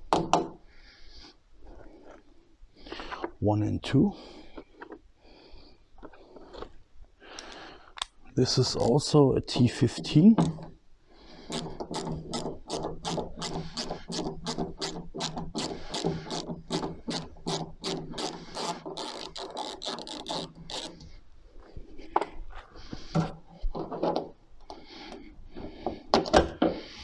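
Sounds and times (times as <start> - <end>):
ratchet tool clicking: 11.5 - 21.0.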